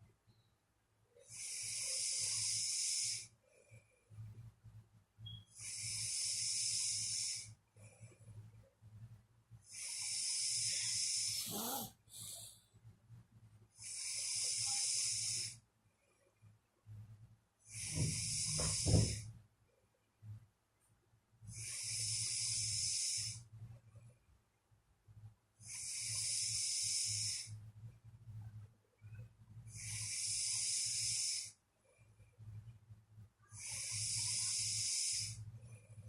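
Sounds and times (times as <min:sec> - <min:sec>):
person snoring: 0:01.3 - 0:03.3, 0:09.7 - 0:12.6, 0:21.5 - 0:23.4, 0:25.6 - 0:27.5, 0:29.7 - 0:31.5, 0:33.6 - 0:35.4
hissing breaths: 0:10.0 - 0:12.6.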